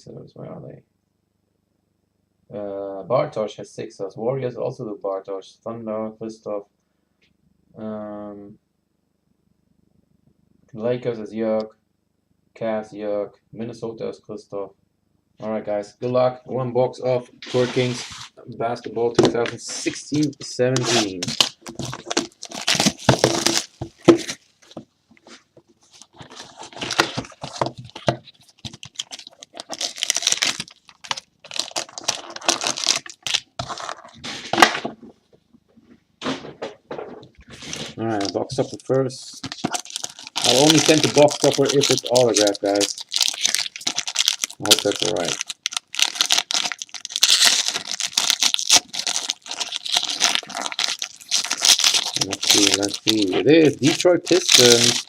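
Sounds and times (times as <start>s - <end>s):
plastic shrink-wrap tearing and crinkling: 20.1s - 24.5s, 25.9s - 34.8s, 37.5s - 55.0s.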